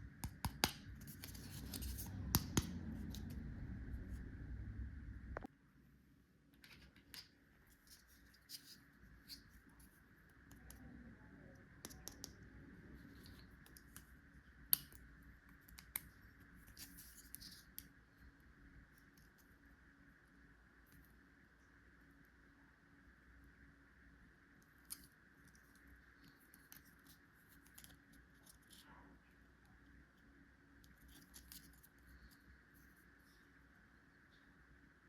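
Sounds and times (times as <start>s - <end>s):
low rumble: 2.7s - 5.5s.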